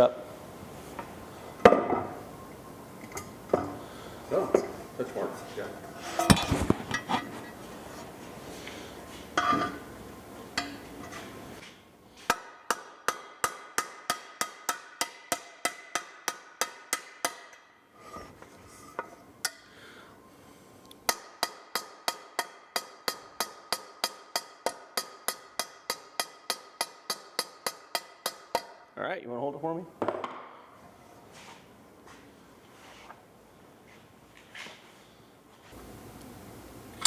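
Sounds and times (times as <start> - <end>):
steel pan ringing: 9.4 - 11.2
hammer striking steel stamp: 21.1 - 28.8.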